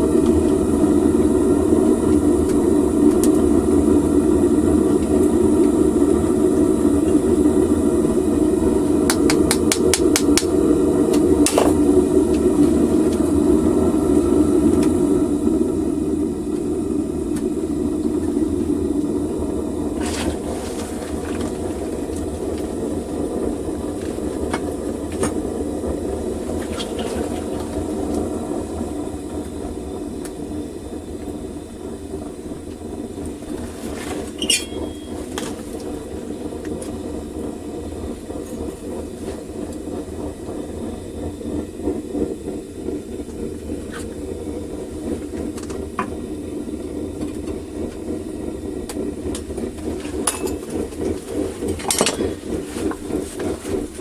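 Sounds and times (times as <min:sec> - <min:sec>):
furnace burner rumbling: 0:00.0 - 0:54.0
brief squeal: 0:34.3 - 0:35.2.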